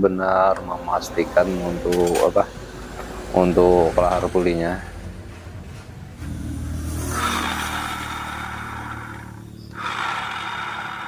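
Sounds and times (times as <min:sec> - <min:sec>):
bearings grinding whir: 0:06.2 - 0:11.0.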